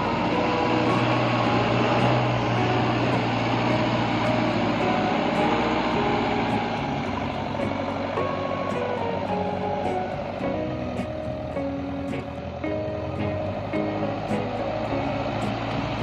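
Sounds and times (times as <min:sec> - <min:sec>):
vehicle engine droning: 0:00.0 - 0:16.0.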